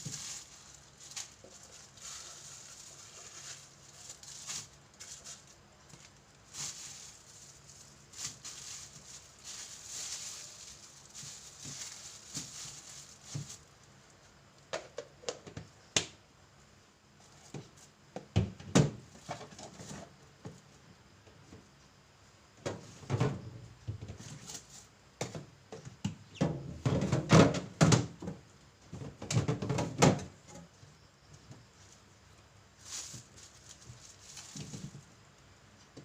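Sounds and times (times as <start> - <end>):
objects knocking and clattering: 25.2 - 30.6.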